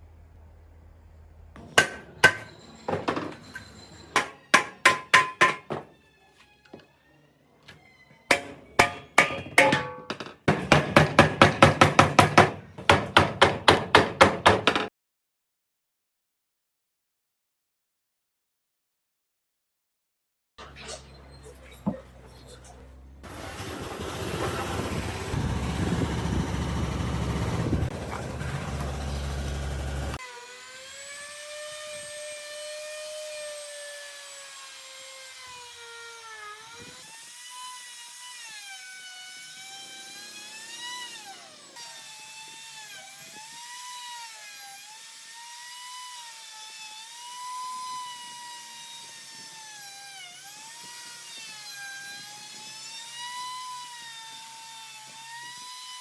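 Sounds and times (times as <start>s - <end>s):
electric motor whine: 23.2s - 33.2s.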